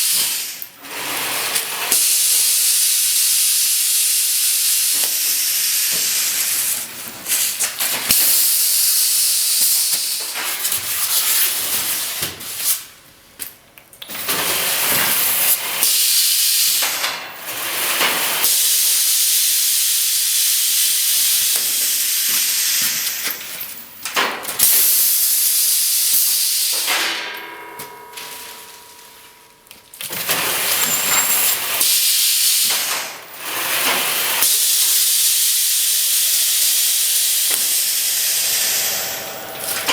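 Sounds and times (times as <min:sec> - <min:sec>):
packaging machine hissing: 0:00.0 - 0:12.8, 0:14.1 - 0:27.3, 0:30.0 - 0:39.9.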